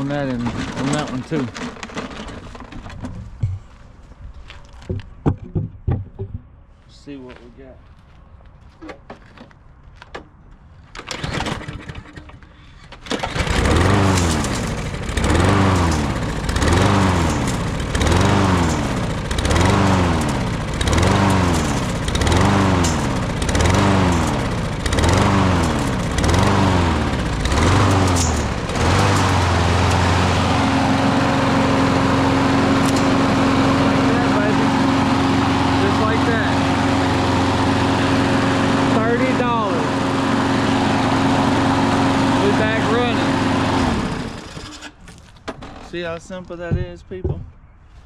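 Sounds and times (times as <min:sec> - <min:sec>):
lawn mower engine surging: 0:00.0 - 0:03.8, 0:11.1 - 0:45.0.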